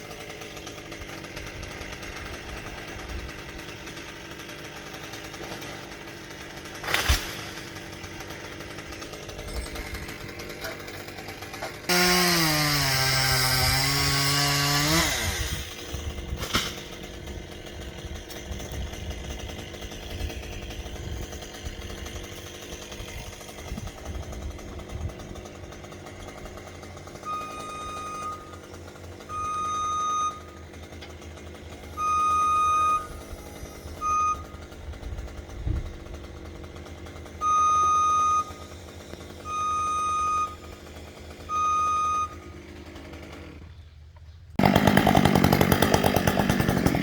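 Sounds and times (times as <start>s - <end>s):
engine running: 0.0s - 47.0s
reversing alarm beeps: 27.3s - 28.5s, 29.3s - 30.5s, 32.0s - 33.2s, 34.0s - 34.6s, 37.4s - 38.6s, 39.5s - 40.6s, 41.5s - 42.4s.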